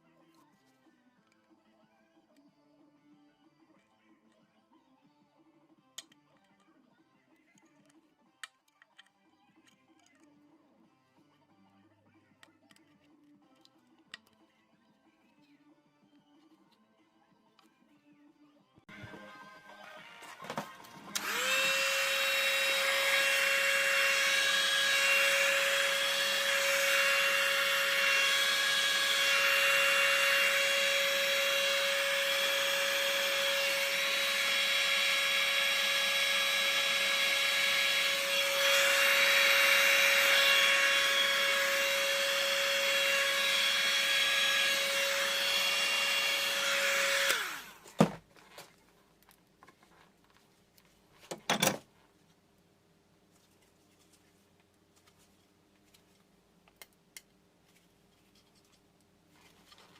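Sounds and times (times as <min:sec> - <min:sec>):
power tool grinding: 0:21.1 - 0:48.0.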